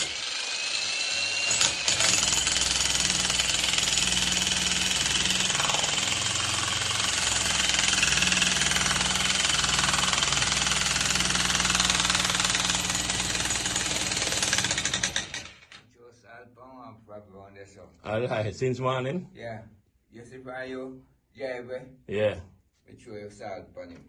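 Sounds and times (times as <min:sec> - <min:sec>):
jackhammer hammering: 0:00.0 - 0:15.8.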